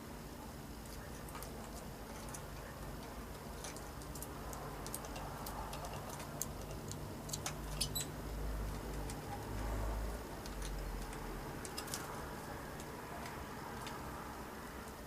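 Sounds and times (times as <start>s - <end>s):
faint high clicks and ticks: 0.8s - 14.2s
high bird chirp: 7.7s - 8.1s.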